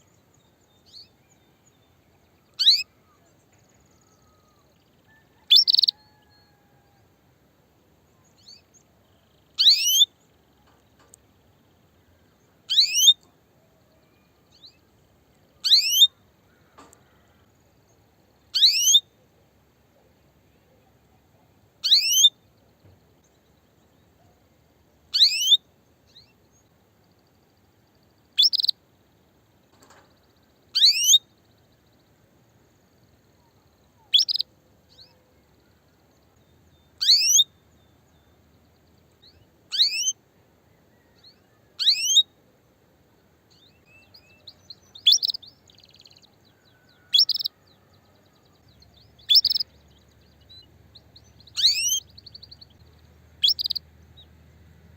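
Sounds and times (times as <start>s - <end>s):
canary chirping: 2.6s - 2.8s, 5.5s - 6.2s, 9.6s - 10.1s, 12.7s - 13.1s, 15.6s - 16.1s, 18.5s - 19.0s, 21.8s - 22.3s, 25.1s - 25.6s, 28.4s - 28.7s, 30.7s - 31.2s, 34.1s - 34.4s, 37.0s - 37.5s, 39.2s - 40.2s, 41.8s - 42.2s, 44.0s - 46.2s, 47.1s - 47.5s, 49.0s - 49.8s, 50.5s - 52.8s, 53.4s - 53.8s.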